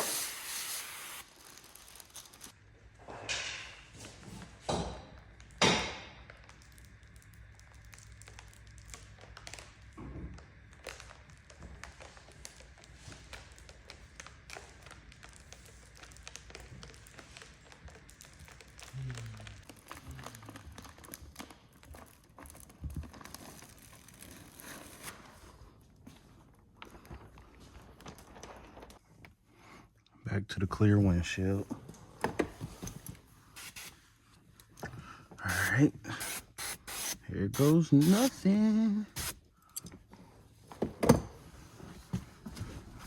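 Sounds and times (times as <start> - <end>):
short hissing bursts: 0.0 - 1.2, 33.6 - 34.0, 35.5 - 38.4, 39.2 - 39.4.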